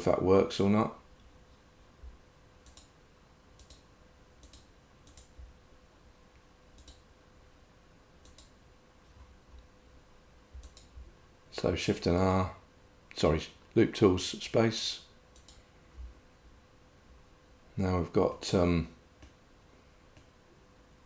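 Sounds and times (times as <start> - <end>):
faint steady hum: 0.0 - 21.0
computer mouse clicks: 2.6 - 3.0, 3.6 - 5.4, 6.7 - 7.0, 8.2 - 8.6, 10.6 - 11.0, 15.3 - 15.6.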